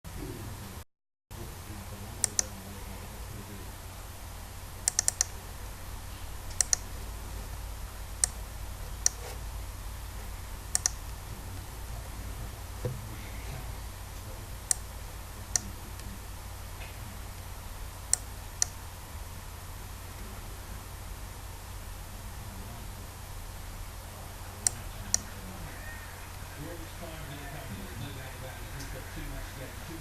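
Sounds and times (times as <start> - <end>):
steady low hum: 0.1 - 30.0
sharp irregular clicks: 2.2 - 2.6, 4.8 - 5.4, 6.5 - 7.0, 8.2 - 8.4, 10.7 - 11.2.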